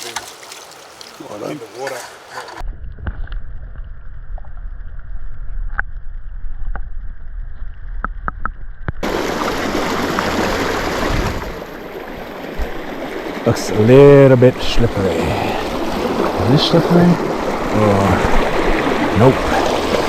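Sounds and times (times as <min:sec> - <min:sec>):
stream water rushing: 0:00.0 - 0:02.6, 0:09.0 - 0:20.0.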